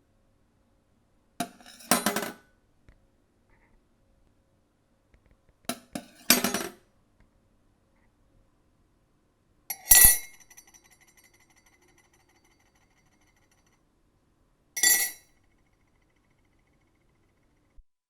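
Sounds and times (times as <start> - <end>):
spoon clinking into mug: 9.7 - 13.0, 14.8 - 15.2
spoon rattling in mug: 9.7 - 13.7, 14.8 - 15.2.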